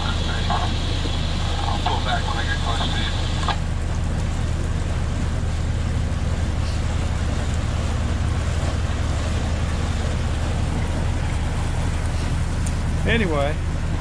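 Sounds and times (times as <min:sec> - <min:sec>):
steady rushing hiss: 0:00.0 - 0:03.6
boat engine drone: 0:00.0 - 0:14.0.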